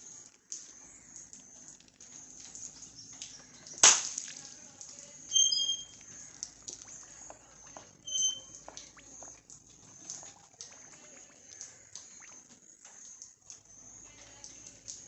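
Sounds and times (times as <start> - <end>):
high bird chirps: 5.3 - 9.4.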